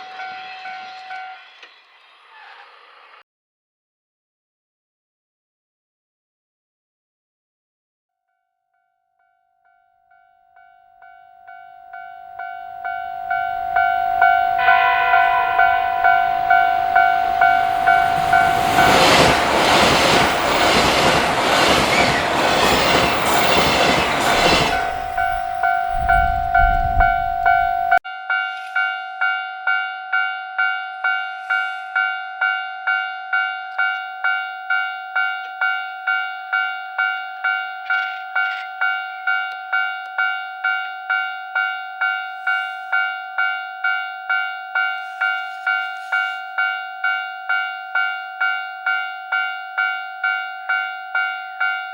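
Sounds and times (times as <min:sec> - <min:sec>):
train wheel and rail noise: 0:00.0 - 0:03.2, 0:12.9 - 0:28.0, 0:42.2 - 0:50.4
level crossing alarm ringing: 0:10.6 - 0:28.0
train horn blast: 0:13.0 - 0:28.0.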